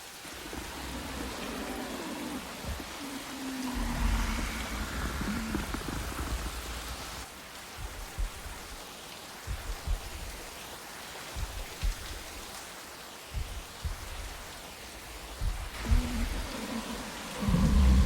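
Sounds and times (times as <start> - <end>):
steady rain hiss: 0.0 - 18.0
short low thuds: 3.8 - 8.8, 9.4 - 10.6, 11.3 - 12.4, 13.3 - 16.6, 17.4 - 18.0.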